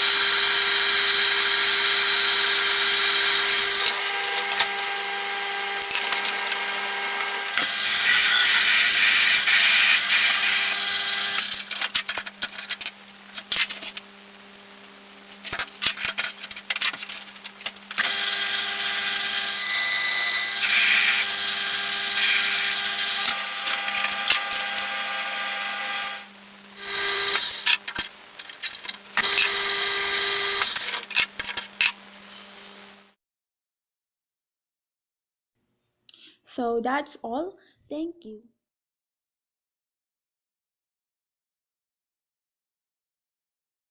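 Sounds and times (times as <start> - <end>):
lathe motor hum: 0.0 - 11.8, 18.0 - 33.1
cutting tool scraping: 0.0 - 12.4, 15.4 - 26.2, 26.8 - 32.9.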